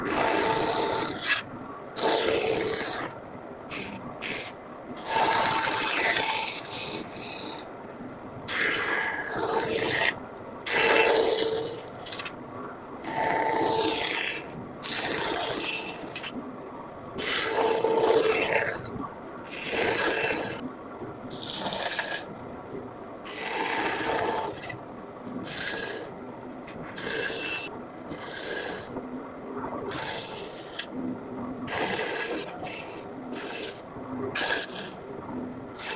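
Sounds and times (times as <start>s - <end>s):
carving tool scraping wood: 0.0s - 1.4s, 2.0s - 3.1s, 3.7s - 7.7s, 8.5s - 12.3s, 13.0s - 16.3s, 17.2s - 18.8s, 19.5s - 20.6s, 21.3s - 22.3s, 23.3s - 24.8s, 25.4s - 26.1s, 26.8s - 29.0s, 29.9s - 30.9s, 31.7s - 33.8s, 34.4s - 35.0s.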